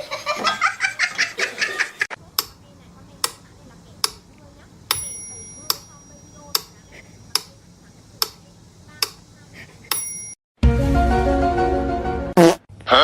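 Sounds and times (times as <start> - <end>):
sharp clicks: 2.3 - 2.6, 3.2 - 4.3, 4.9 - 7.6, 8.2 - 8.4, 9.0 - 9.2
high bell-like ring: 4.9 - 6.4, 9.9 - 10.4.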